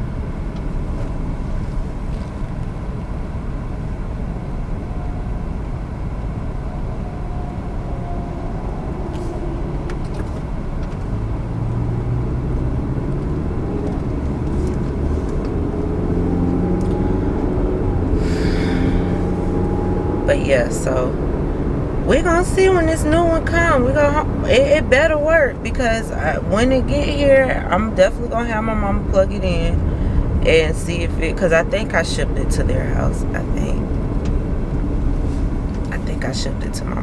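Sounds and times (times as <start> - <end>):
car engine accelerating: 0.0 - 37.0
road noise in moving car: 0.0 - 37.0.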